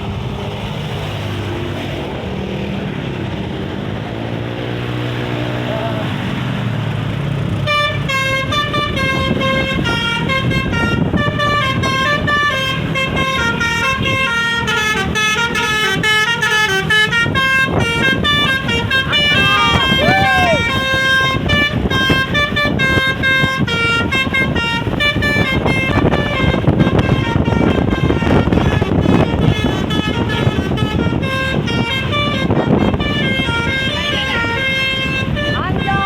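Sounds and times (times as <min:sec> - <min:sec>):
large vehicle engine running: 0:00.0 - 0:36.0
multi-tone musical bus horn: 0:07.2 - 0:36.0.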